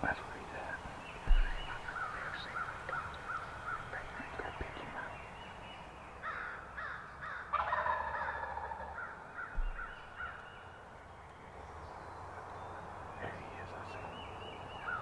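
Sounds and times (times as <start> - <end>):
crows cawing: 1.4 - 4.3, 6.2 - 10.6, 14.8 - 15.0
turkey gobbling: 7.3 - 10.4.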